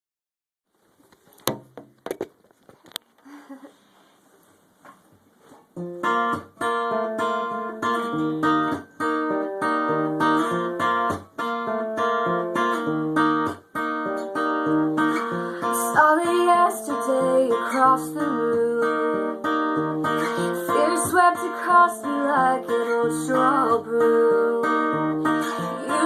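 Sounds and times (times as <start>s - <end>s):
acoustic guitar chords: 5.8s - 26.0s.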